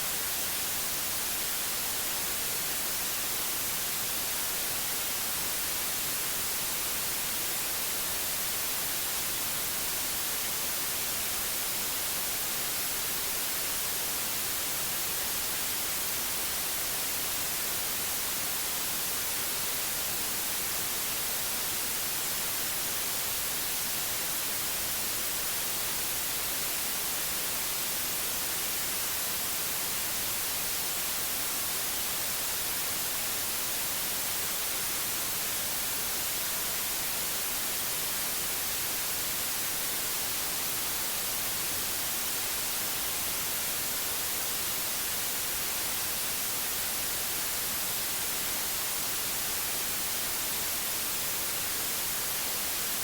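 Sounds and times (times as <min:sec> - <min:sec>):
white noise hiss: 0:00.0 - 0:53.0.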